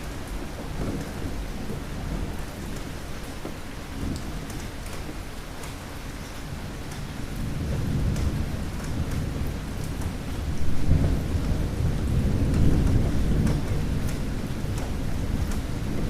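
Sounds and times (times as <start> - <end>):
steady rain: 0.0 - 16.0
rolling thunder: 6.5 - 16.0.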